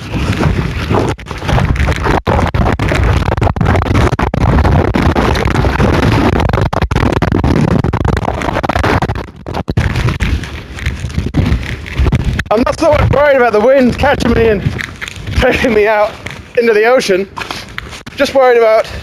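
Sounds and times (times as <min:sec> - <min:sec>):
storm wind buffeting microphone: 0:00.0 - 0:19.0.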